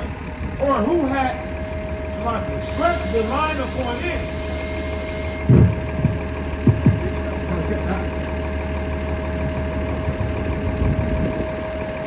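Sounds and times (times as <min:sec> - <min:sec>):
low engine-like hum: 0:00.0 - 0:12.0
thin steady whine: 0:00.0 - 0:12.0
short low thumps: 0:05.4 - 0:08.2.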